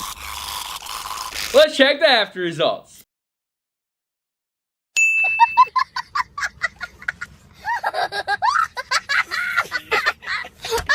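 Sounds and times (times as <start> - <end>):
sound effect ding: 5.0 - 5.7.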